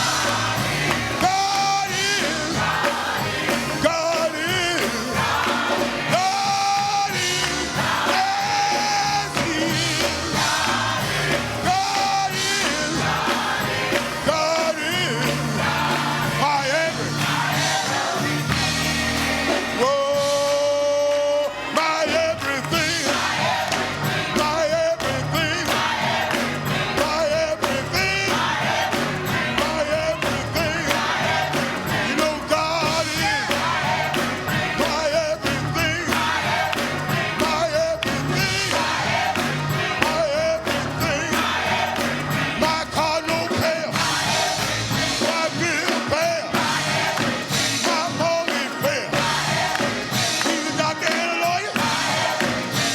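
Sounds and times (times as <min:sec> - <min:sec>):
gospel singing with full band: 0:00.0 - 0:52.9.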